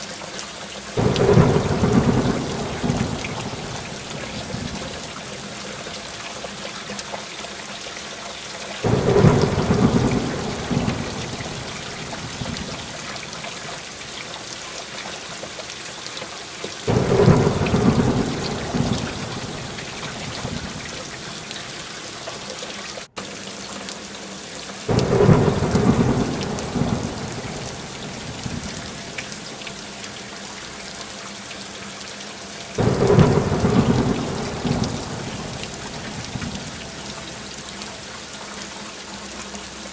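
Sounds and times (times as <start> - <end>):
steady rain: 0.0 - 39.9
thunder rumbles: 1.0 - 5.8, 8.8 - 13.5, 16.9 - 21.8, 24.9 - 29.6, 32.8 - 37.7.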